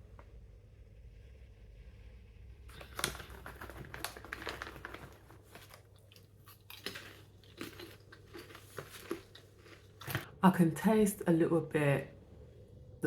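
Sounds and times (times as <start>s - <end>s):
person chewing popcorn: 2.7s - 10.3s.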